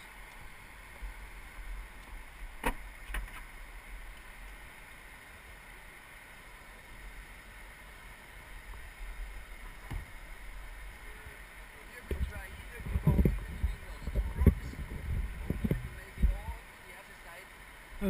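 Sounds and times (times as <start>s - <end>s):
water rushing around kayak: 0.0s - 18.0s
sharp knocks or splashes: 2.6s - 3.5s
low rumble: 12.2s - 16.5s.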